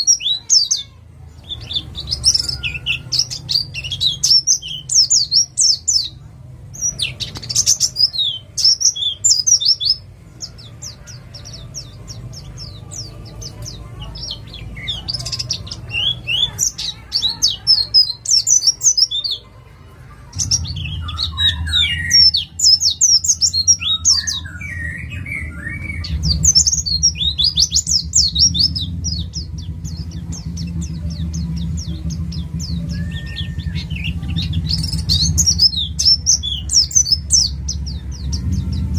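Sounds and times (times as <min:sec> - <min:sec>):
bird chirping: 0:00.0 - 0:38.9
low hum: 0:20.1 - 0:38.9.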